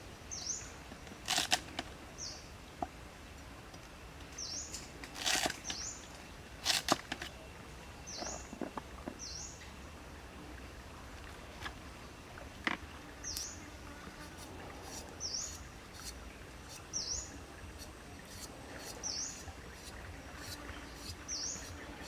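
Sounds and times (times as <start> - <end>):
forest ambience hiss: 0.0 - 22.0
bird chirping: 14.9 - 21.8.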